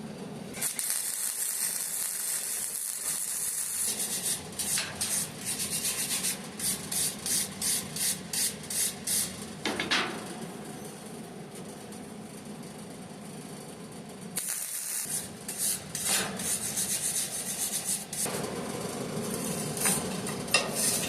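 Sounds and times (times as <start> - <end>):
abrasive rubbing on metal: 19.6 - 21.0.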